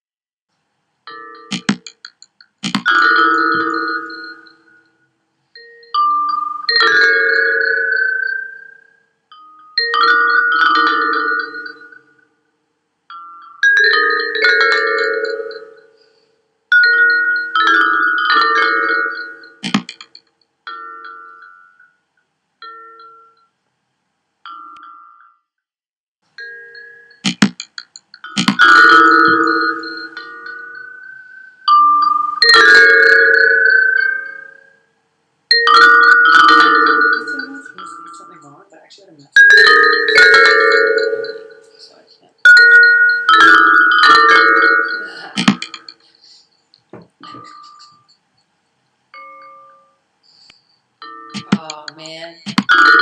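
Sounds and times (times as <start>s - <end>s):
bell-like mallet tones: 1.1s - 12.4s, 13.1s - 21.9s, 26.4s - 34.8s, 35.5s - 46.4s, 47.2s - 48.2s, 49.2s - 50.0s, 51.0s - 53.0s
sharp clicks: 27.2s - 28.6s.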